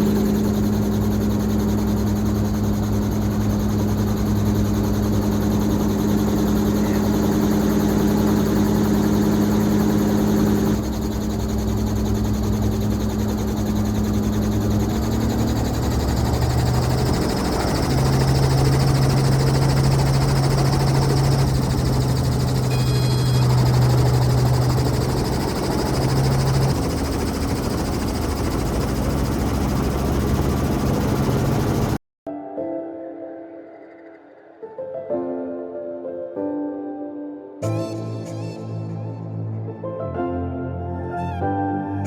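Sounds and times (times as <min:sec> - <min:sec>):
helicopter engine and rotor: 0:00.0 - 0:32.0.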